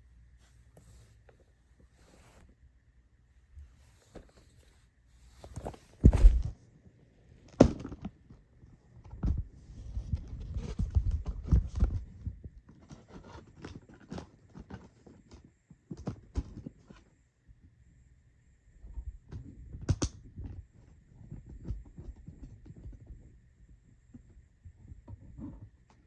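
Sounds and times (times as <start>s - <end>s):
packaging rustling and scraping: 3.6s - 6.5s
box thumping: 5.3s - 6.5s.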